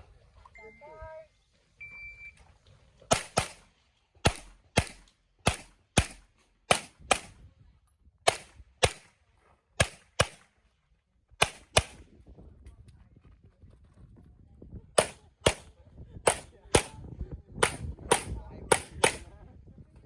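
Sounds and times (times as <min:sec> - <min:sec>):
shot timer beep: 0:01.8 - 0:02.4
handgun shots in quick pairs: 0:03.1 - 0:03.6, 0:04.2 - 0:07.4, 0:08.3 - 0:09.1, 0:09.8 - 0:10.4, 0:11.4 - 0:12.0, 0:15.0 - 0:15.7, 0:17.6 - 0:19.3.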